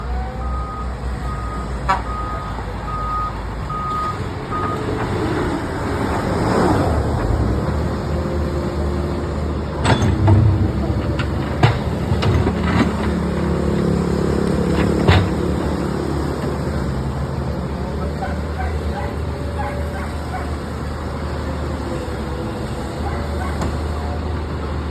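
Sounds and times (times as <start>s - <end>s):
backhoe engine running: 0.0s - 24.9s
reversing alarm beeps: 0.4s - 4.8s.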